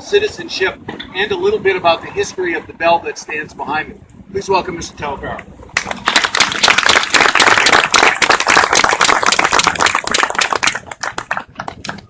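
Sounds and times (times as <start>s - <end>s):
audience applauding: 5.8s - 12.0s.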